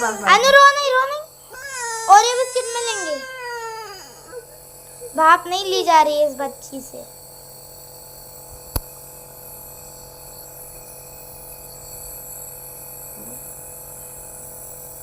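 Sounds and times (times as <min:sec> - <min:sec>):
electric appliance hum: 0:00.0 - 0:15.0
thin high whine: 0:00.0 - 0:15.0
sharp click: 0:08.7 - 0:09.0.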